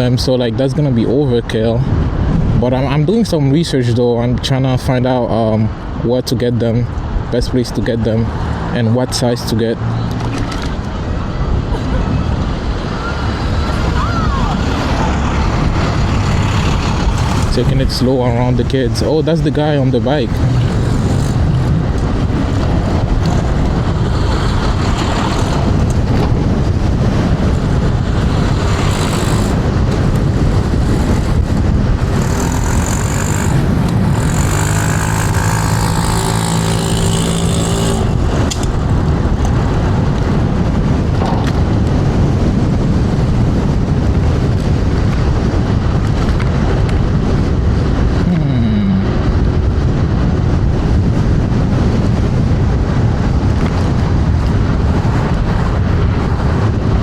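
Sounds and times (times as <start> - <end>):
wind rushing over microphone: 0.0 - 57.0
electric scooter road noise: 4.8 - 57.0
steady pitched hum: 14.8 - 39.8.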